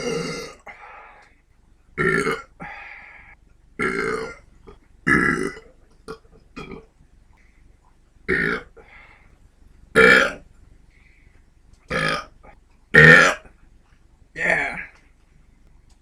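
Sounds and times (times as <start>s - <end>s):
person burping: 0.0s - 0.7s, 2.0s - 2.5s, 3.8s - 4.4s, 5.1s - 6.8s, 8.3s - 8.7s, 10.0s - 10.4s, 11.9s - 12.3s, 13.0s - 13.5s.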